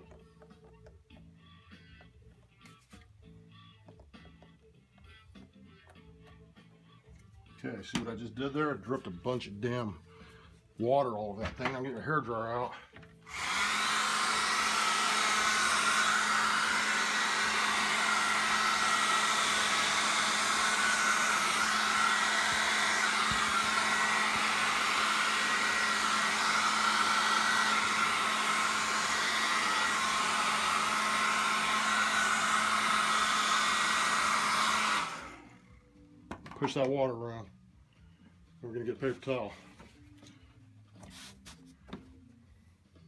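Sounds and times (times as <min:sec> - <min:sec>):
hairdryer running: 0:13.3 - 0:35.8.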